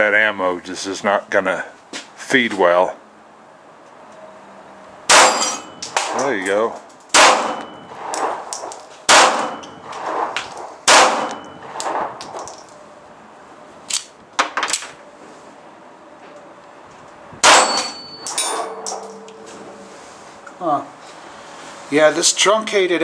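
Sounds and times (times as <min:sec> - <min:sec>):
pistol shots ringing out: 0:05.1 - 0:06.4, 0:07.1 - 0:12.6, 0:17.4 - 0:19.0.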